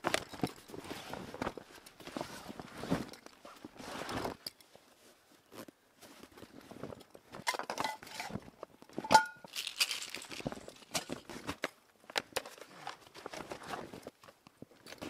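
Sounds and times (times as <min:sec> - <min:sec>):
camping gear clattering: 0:00.0 - 0:04.7, 0:05.5 - 0:15.0
rustling: 0:00.0 - 0:11.8.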